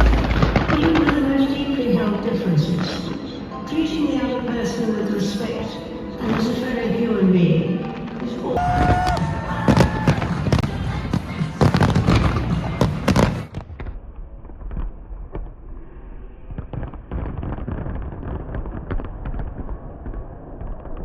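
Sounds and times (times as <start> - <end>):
fireworks bursting in loud bangs: 0.0 - 1.4, 8.6 - 14.0, 16.6 - 21.0
muffled popping and crackling: 11.6 - 15.8, 16.5 - 21.0.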